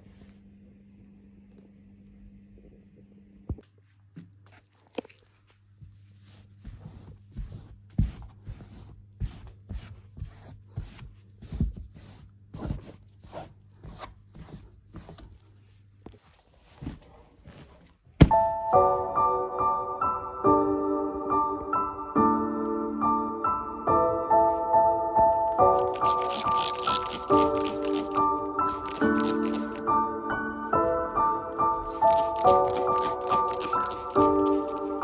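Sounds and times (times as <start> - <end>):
soft piano music: 18.2 - 35.0.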